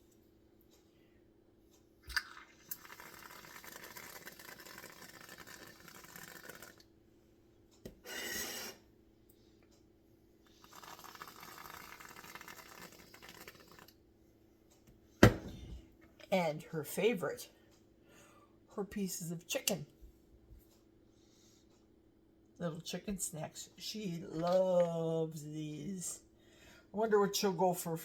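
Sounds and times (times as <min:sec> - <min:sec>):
aerosol sputter: 0:02.1 - 0:06.8, 0:10.5 - 0:13.9
whipped cream can hissing: 0:02.7 - 0:06.8, 0:08.0 - 0:08.8, 0:10.6 - 0:13.9.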